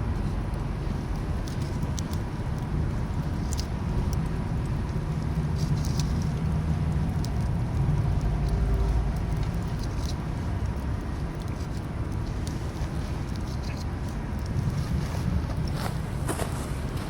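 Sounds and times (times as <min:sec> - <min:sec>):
low rumble: 0:00.0 - 0:13.4
campfire crackling and snapping: 0:00.0 - 0:17.0.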